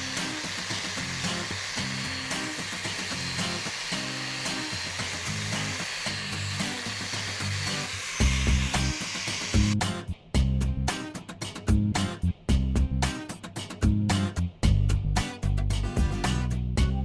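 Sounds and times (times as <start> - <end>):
background music with bass line: 9.5 - 17.0.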